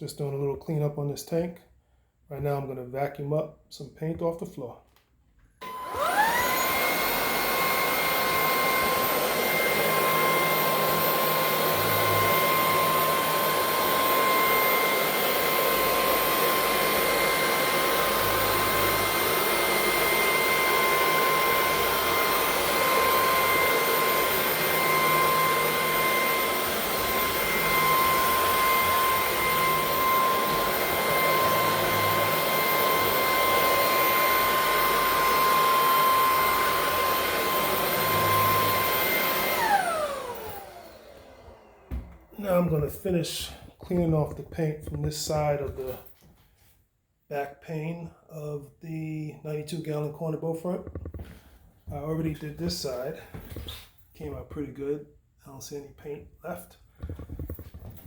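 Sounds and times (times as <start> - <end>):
vacuum cleaner motor whine: 5.6 - 43.5.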